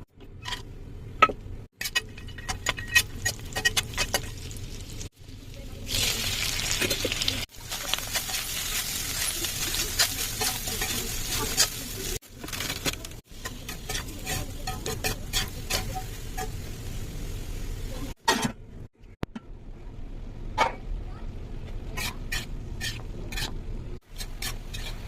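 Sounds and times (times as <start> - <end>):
food sizzling in a pan: 2.9 - 12.2.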